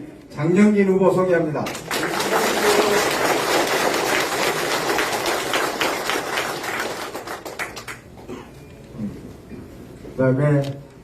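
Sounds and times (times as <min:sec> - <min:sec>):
audience applauding: 0:01.7 - 0:08.2.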